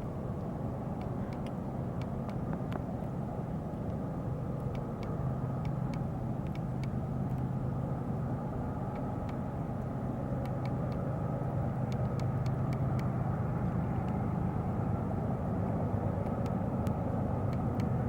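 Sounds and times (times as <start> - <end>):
diesel locomotive engine rumble: 0.0 - 18.0
faint ticks: 0.4 - 2.9, 4.6 - 7.5, 8.9 - 11.1, 11.8 - 13.2, 16.2 - 18.0.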